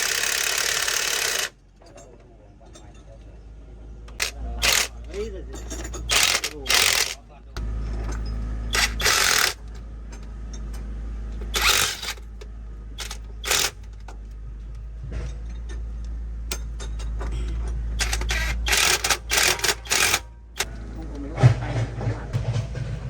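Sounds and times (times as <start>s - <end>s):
metal tools clanking: 1.2s - 3.5s, 4.1s - 7.2s, 7.8s - 12.4s, 13.0s - 14.3s, 15.1s - 21.9s.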